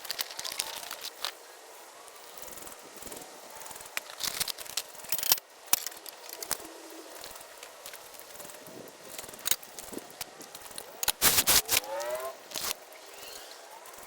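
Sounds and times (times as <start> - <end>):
parts clicking and knocking: 4.0 - 6.6, 7.2 - 12.8
packaging rustling: 11.1 - 12.8.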